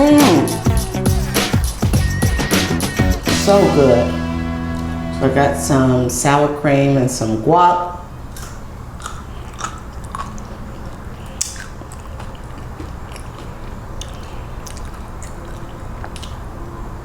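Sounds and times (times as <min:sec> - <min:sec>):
low hum: 0:02.1 - 0:07.3
tortilla chips crunching: 0:08.3 - 0:16.5
person chewing: 0:08.3 - 0:16.8.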